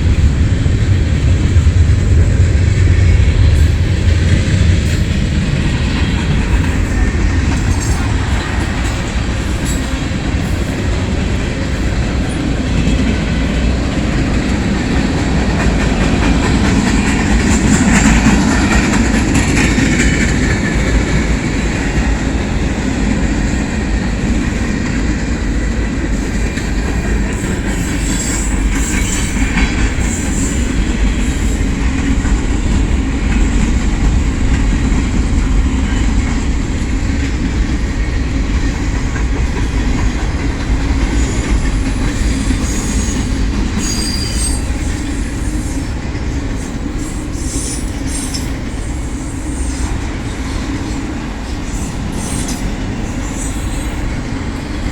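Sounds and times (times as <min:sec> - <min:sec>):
freight train wheels rumbling: 0:00.0 - 0:54.9
wheel squeals: 0:41.1 - 0:45.9.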